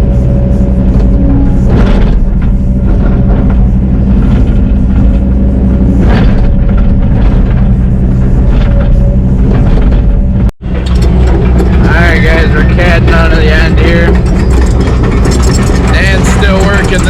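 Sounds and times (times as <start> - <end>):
steady high tone: 0.0 - 6.7
excavator diesel engine running: 0.0 - 17.0.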